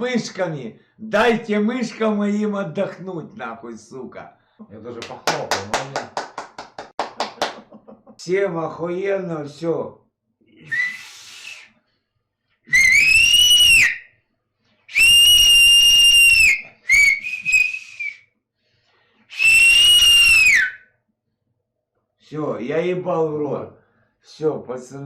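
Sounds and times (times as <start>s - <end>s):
loud piercing whistles: 10.6s - 11.8s, 12.7s - 14.2s, 14.9s - 18.3s, 19.3s - 20.9s.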